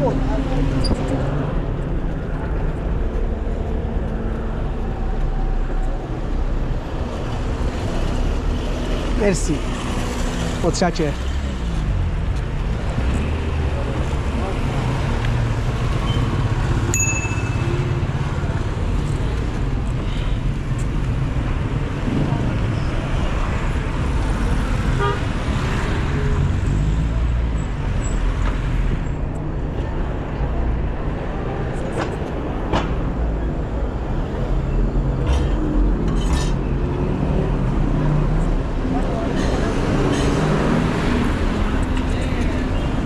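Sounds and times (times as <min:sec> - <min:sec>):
street traffic rumble: 0:00.0 - 0:43.0
bicycle bell ding: 0:16.9 - 0:17.9.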